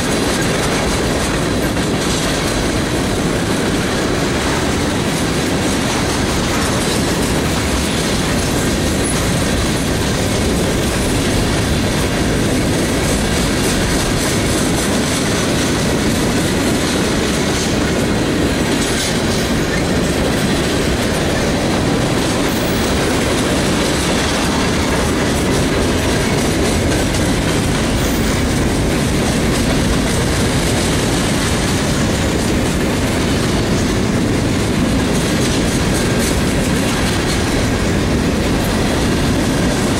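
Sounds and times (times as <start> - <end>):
clacking over rail joints: 0.0 - 39.9
train wheels rumbling on rail: 0.0 - 39.9.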